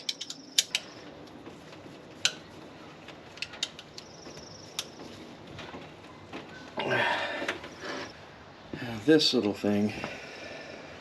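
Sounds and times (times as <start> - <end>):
metallic clicks of hand tools: 0.0 - 0.9.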